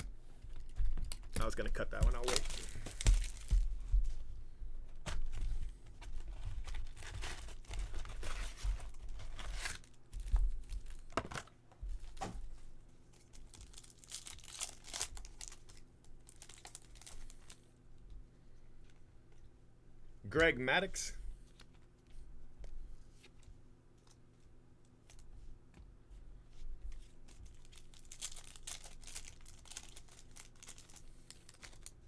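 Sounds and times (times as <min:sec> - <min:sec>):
card pack wrappers crinkling: 0:00.6 - 0:03.8, 0:06.6 - 0:12.2, 0:13.1 - 0:17.6, 0:27.3 - 0:32.0.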